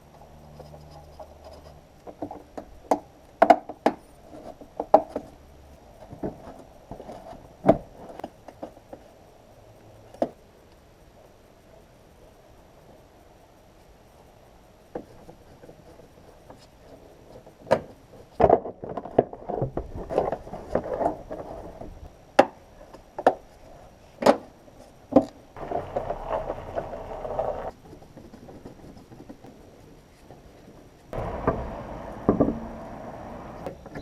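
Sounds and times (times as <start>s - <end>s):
steady rushing noise: 25.6s - 27.7s, 31.2s - 33.7s
metal knocks and clatter: 31.2s - 32.9s.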